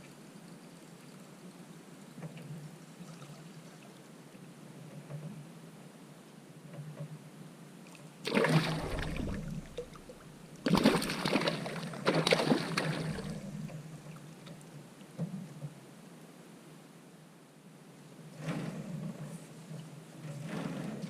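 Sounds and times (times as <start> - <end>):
water splashing against a canoe: 8.2 - 14.8.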